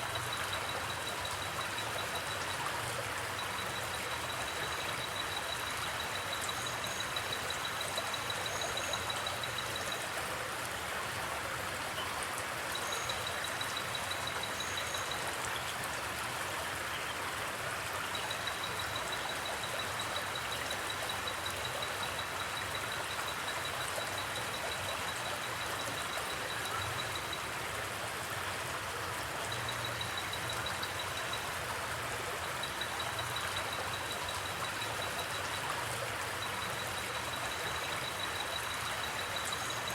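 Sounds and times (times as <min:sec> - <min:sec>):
cricket trilling: 0:00.0 - 0:10.1, 0:12.8 - 0:15.2, 0:32.2 - 0:39.9
river running: 0:00.0 - 0:39.9.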